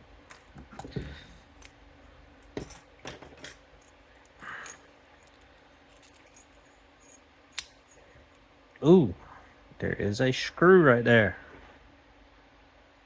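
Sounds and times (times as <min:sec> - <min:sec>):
padlock clicking and clinking: 0:06.0 - 0:08.1.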